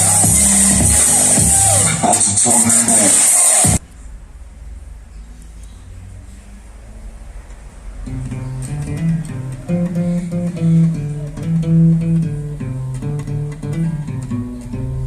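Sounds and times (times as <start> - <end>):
bass line: 0.0 - 3.9, 8.1 - 15.0
guitar melody: 8.0 - 15.0.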